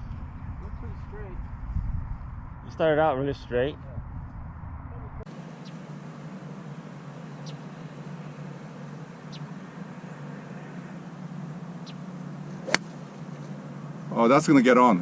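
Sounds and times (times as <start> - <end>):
steady low hum: 0.0 - 15.0
faint high chirps: 5.4 - 11.0
golf club striking ball: 5.5 - 14.1.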